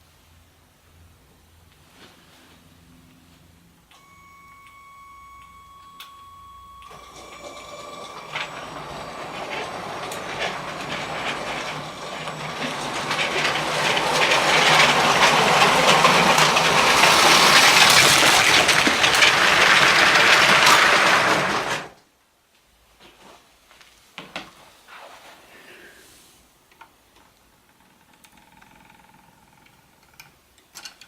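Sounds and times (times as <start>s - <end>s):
train wheels clattering on rails: 7.3s - 21.9s.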